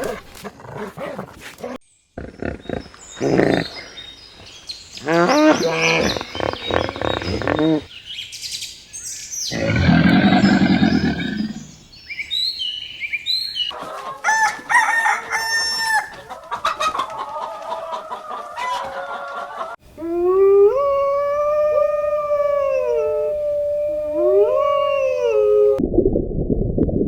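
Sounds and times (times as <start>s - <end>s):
chickens clucking: 13.7s - 19.8s
rooster crowing: 14.2s - 16.3s.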